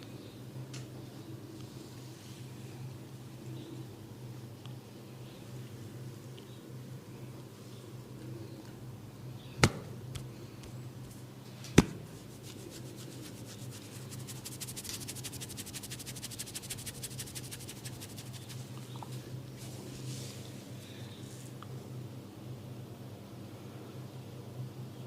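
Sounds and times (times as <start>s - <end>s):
sharp cracks: 9.6s - 10.3s.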